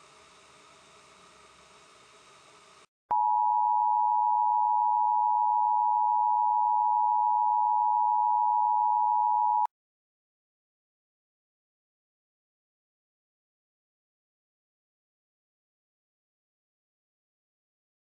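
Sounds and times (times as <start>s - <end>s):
steady electronic broadcast tone: 3.1s - 9.7s.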